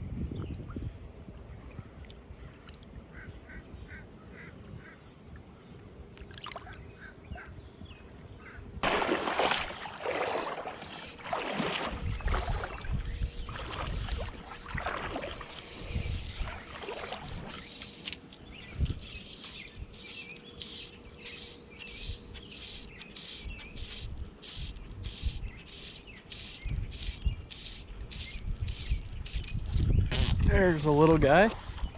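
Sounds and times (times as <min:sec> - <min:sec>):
distant waterfowl calling: 0:08.4 - 0:18.1.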